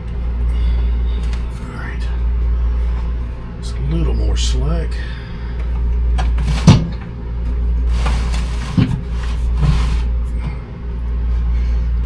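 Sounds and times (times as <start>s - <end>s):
steady low hum: 0.0s - 12.0s
hands rustling wiring: 5.6s - 10.4s.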